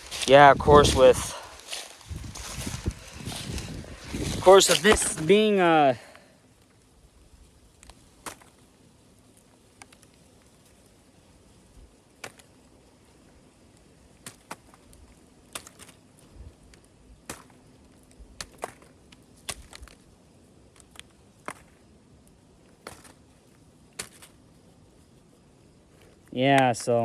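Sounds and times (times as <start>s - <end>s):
soft low thumps: 0.0s - 4.5s
cornstalks cracking underfoot: 0.0s - 6.9s, 7.5s - 24.5s.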